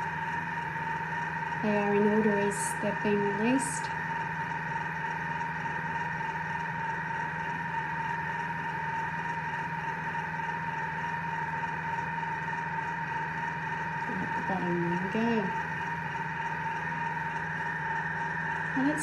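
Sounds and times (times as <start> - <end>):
kitchen appliance motor humming: 0.0 - 19.0.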